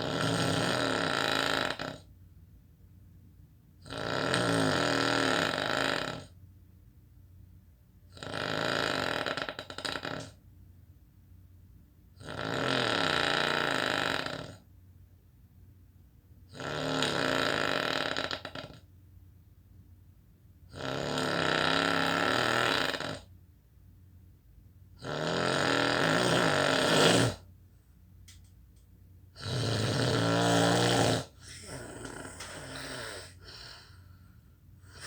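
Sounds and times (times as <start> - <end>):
person snoring loudly: 0.0 - 2.0, 3.9 - 6.3, 8.2 - 10.3, 12.2 - 14.6, 16.6 - 18.8, 20.8 - 23.3, 25.0 - 27.4, 29.4 - 34.2.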